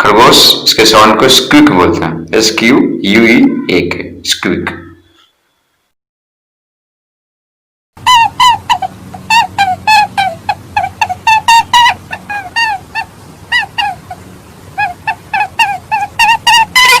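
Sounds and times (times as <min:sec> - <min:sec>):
short honking animal calls: 0:08.0 - 0:17.0.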